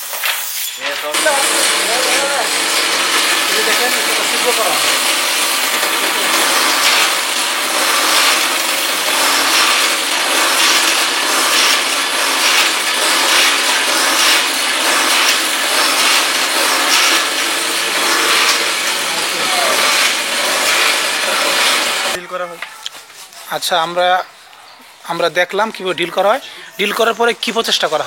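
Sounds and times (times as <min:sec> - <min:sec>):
electric drill boring holes: 0:00.0 - 0:22.2.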